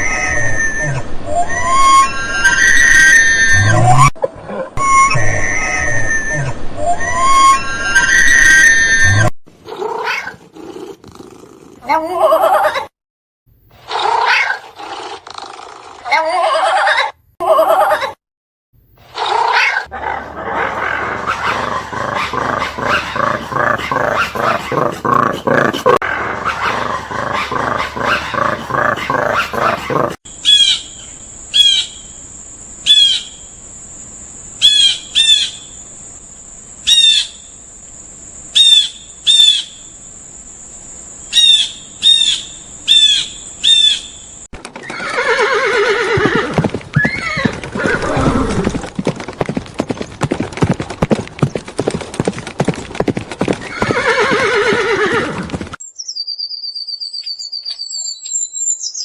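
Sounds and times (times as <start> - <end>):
dog growling: 19.3 - 30.2
horse whinnying and neighing: 44.8 - 48.9, 53.4 - 55.7.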